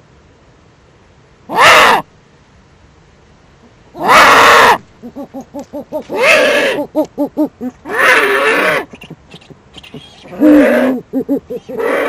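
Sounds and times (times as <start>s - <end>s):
owls screeching: 1.5s - 2.1s, 4.0s - 7.0s, 7.6s - 12.0s
rapid short hooting: 5.0s - 12.0s.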